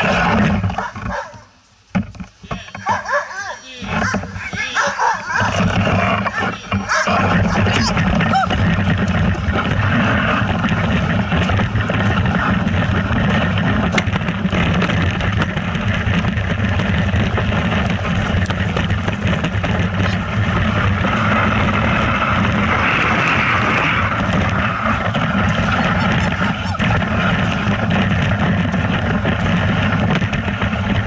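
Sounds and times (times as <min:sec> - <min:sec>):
vehicle engine running steadily: 0:07.0 - 0:31.0.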